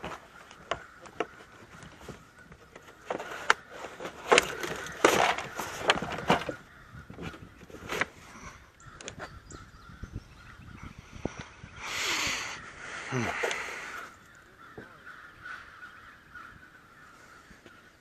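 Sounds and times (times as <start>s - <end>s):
knocks and clatter on kayak: 0.0s - 8.2s
distant crows cawing: 0.0s - 18.0s.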